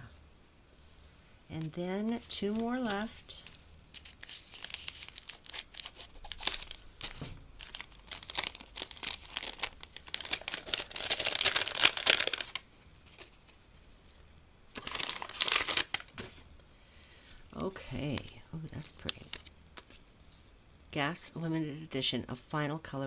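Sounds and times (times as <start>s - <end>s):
packaging crinkling and tearing: 2.8s - 13.4s, 14.7s - 16.2s, 17.6s - 20.0s.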